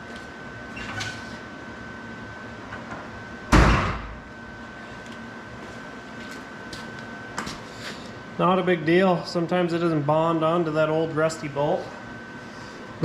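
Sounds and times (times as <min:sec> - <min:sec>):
loud bang: 0:03.5 - 0:04.2.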